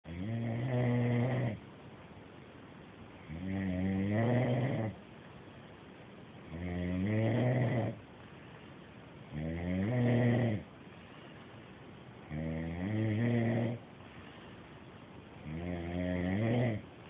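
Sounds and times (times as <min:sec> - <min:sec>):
loud rhythmic snoring: 0:00.1 - 0:01.6, 0:03.2 - 0:05.0, 0:06.5 - 0:08.0, 0:09.3 - 0:10.7, 0:12.2 - 0:14.5, 0:15.4 - 0:16.9
quiet breathing: 0:03.1 - 0:17.0.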